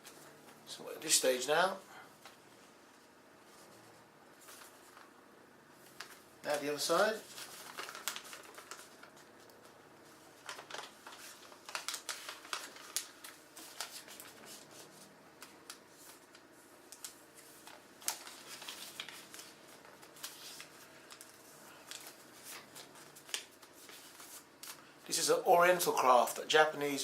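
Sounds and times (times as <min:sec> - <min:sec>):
paper folding and creasing: 0:06.9 - 0:24.9.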